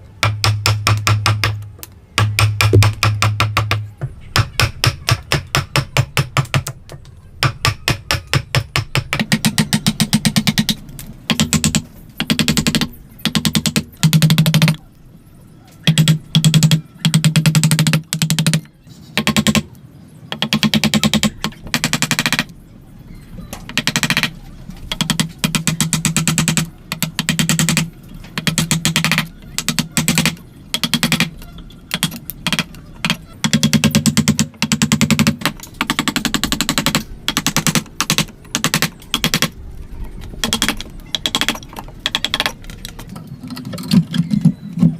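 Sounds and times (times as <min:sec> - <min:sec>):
rapid sharp knocks: 0:00.2 - 0:01.6, 0:02.2 - 0:03.8, 0:07.4 - 0:14.8, 0:20.3 - 0:22.5, 0:23.7 - 0:39.6, 0:40.4 - 0:42.6.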